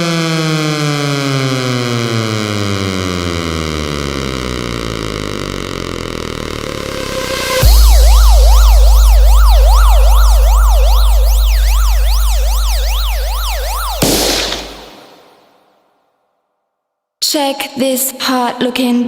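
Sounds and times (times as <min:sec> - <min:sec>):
synthetic siren wailing: 0:00.0 - 0:15.4
deep sub-bass tone: 0:04.2 - 0:14.3.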